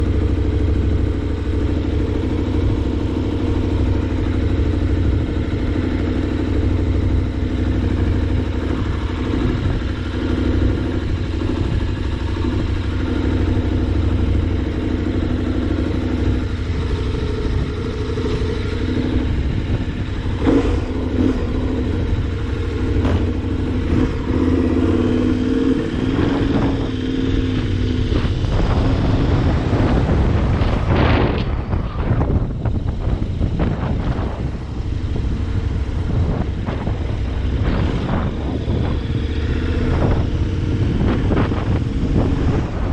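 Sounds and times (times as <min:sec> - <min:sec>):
vehicle engine humming: 0:00.0 - 0:42.9
wind rumbling on microphone: 0:00.0 - 0:42.9.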